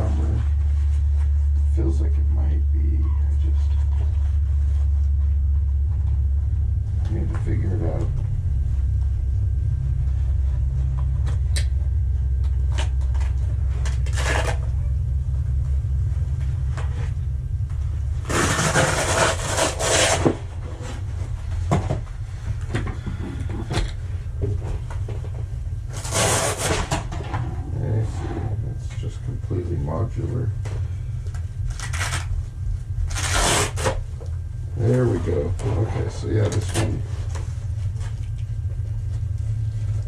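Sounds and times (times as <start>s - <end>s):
steady low rumble: 0.0s - 40.0s
fabric tearing and rustling: 18.3s - 20.3s, 25.9s - 26.9s, 33.1s - 34.0s.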